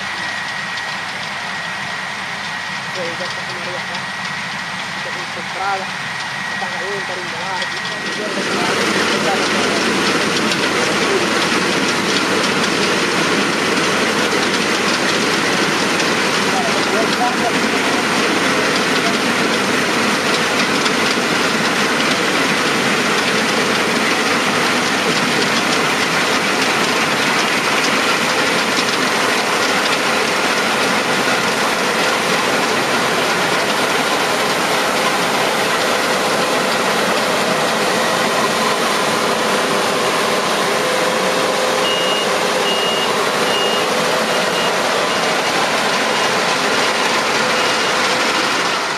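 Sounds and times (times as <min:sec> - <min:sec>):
combine harvester running: 0:00.0 - 0:48.9
repeating high beep: 0:41.8 - 0:45.5.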